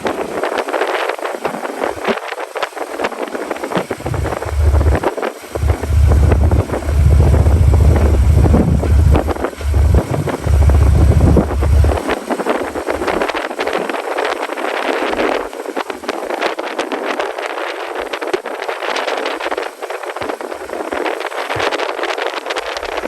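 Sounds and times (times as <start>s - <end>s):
wind buffeting microphone: 2.8s - 13.9s
strong wind blowing: 2.9s - 13.4s.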